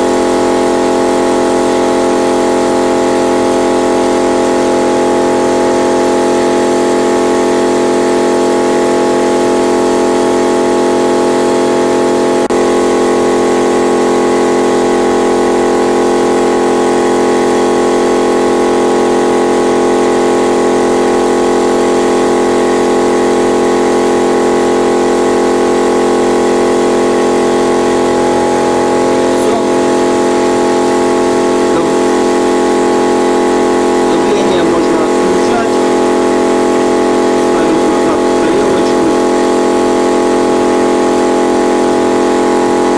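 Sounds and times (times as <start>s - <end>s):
motorcycle engine idling: 24.2s - 42.9s.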